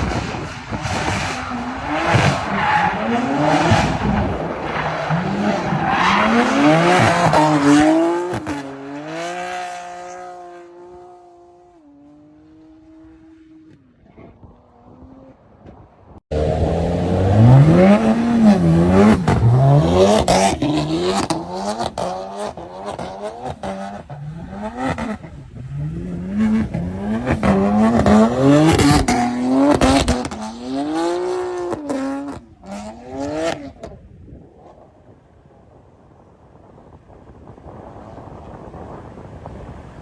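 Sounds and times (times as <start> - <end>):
car engine revving hard: 16.3 - 33.7.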